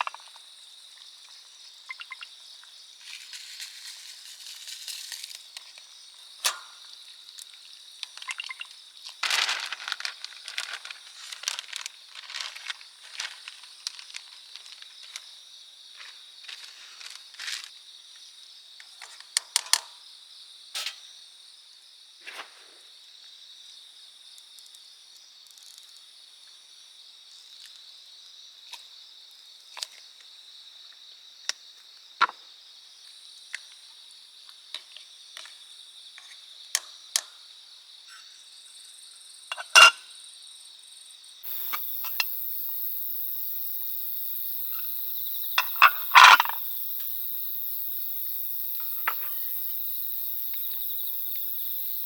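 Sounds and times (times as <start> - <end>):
crickets trilling: 0.0 - 19.2, 38.1 - 52.0
high-pitched insect trill: 41.0 - 52.0.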